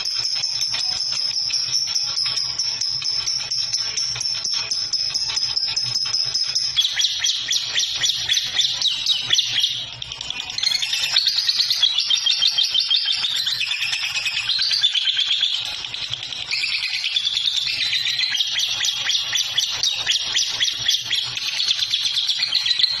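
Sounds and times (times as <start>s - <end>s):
songbird chirping and trilling: 0.0s - 23.0s.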